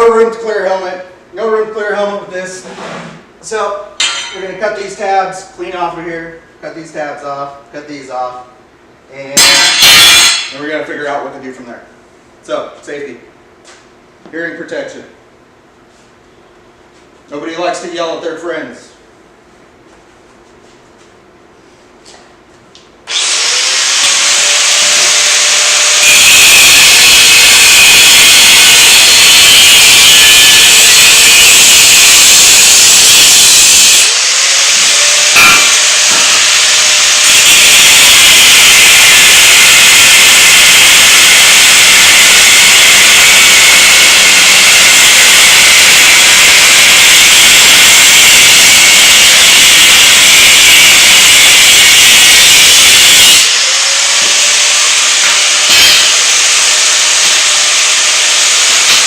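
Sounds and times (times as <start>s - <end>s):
angle grinder cutting metal: 9.4s - 10.6s, 23.1s - 28.0s, 30.3s - 48.1s, 52.5s - 59.0s.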